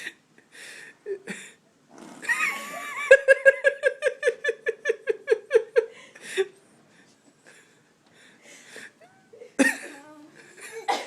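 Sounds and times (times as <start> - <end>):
person laughing rhythmically: 2.3 - 6.0.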